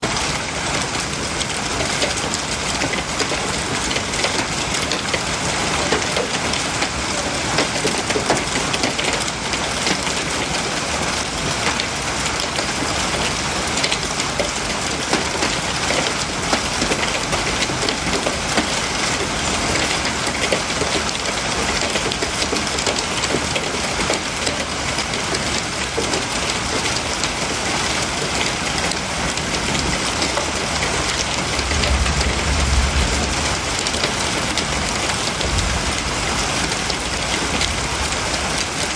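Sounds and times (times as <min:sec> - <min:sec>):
hail clattering: 0:00.0 - 0:38.9
rain-like hiss: 0:27.4 - 0:38.9.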